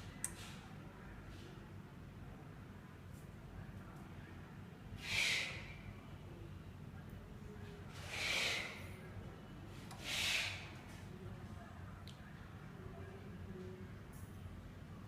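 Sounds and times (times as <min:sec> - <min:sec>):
low background hum: 0:00.0 - 0:15.0
hissing puffs of air: 0:10.0 - 0:10.7.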